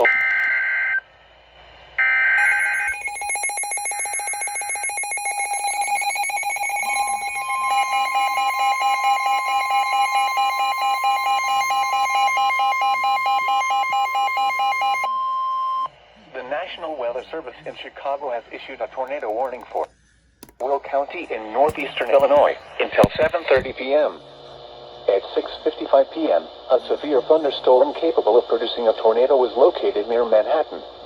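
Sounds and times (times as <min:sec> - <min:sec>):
steady high tone: 0:02.0 - 0:18.4.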